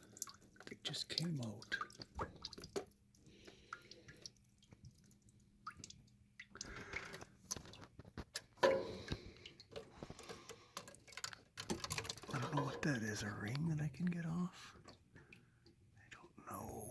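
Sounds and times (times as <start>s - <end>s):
water dripping from pipe: 0.0s - 16.0s
clicks of metal pipe fittings: 7.0s - 12.9s.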